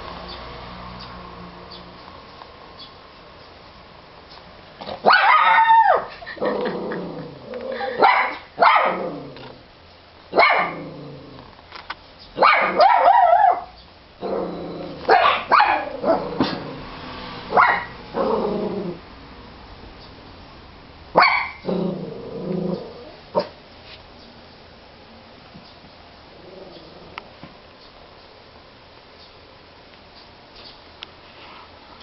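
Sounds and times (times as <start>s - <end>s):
dog barking and yipping: 4.9s - 6.7s, 7.8s - 9.2s, 10.3s - 10.9s, 12.4s - 13.8s, 15.0s - 16.6s, 17.5s - 18.4s, 21.2s - 21.8s, 23.3s - 23.6s.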